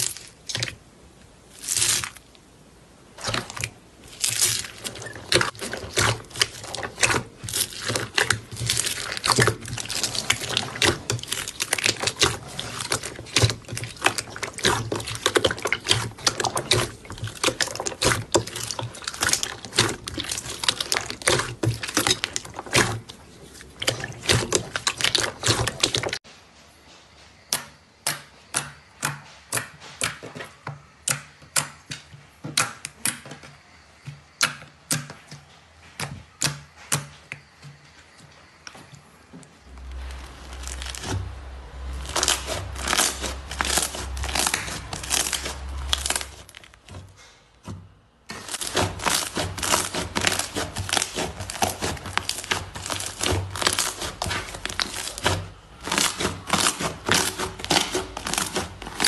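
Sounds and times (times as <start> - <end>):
slime squeezed by hand crackling: 1.5 - 2.2, 39.8 - 46.9, 48.3 - 59.0.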